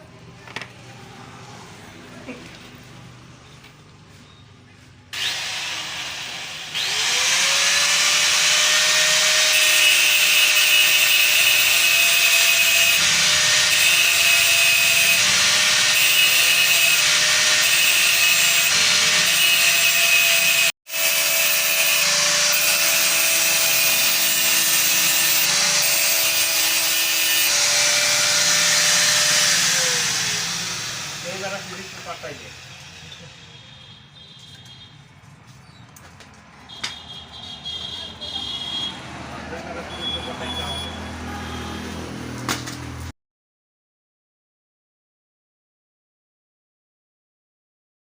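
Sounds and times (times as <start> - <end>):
power tool grinding: 5.2 - 33.6
electric motor whine: 27.5 - 33.2.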